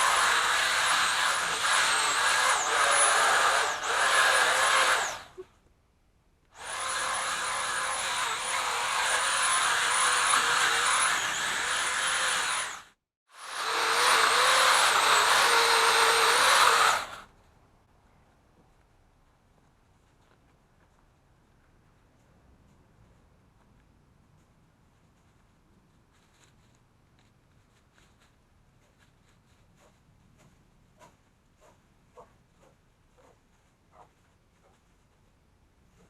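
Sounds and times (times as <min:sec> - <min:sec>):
chainsaw cutting: 0:00.0 - 0:05.4, 0:06.6 - 0:17.3.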